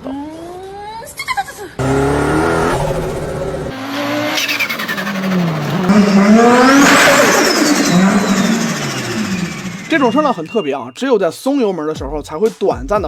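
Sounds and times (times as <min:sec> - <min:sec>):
car engine revving: 0:01.8 - 0:10.6
turbo whistle: 0:02.6 - 0:11.2
turbo flutter chatter: 0:06.6 - 0:10.8.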